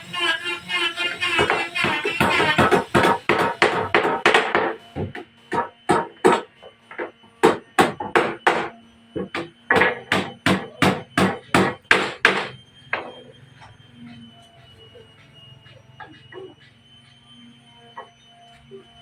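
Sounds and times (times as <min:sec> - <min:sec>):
hammer blows on wood: 0:00.2 - 0:12.6.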